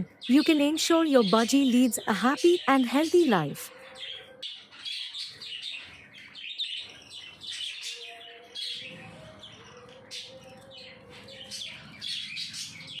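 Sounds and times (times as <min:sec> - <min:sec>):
budgies chirping: 0:00.0 - 0:13.0.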